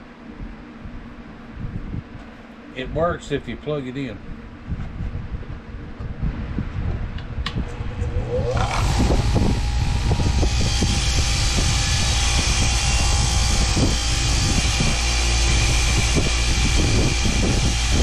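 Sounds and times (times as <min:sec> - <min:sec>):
wire wheel motor spinning: 0:07.5 - 0:18.0
wire brush scrubbing metal: 0:08.5 - 0:18.0.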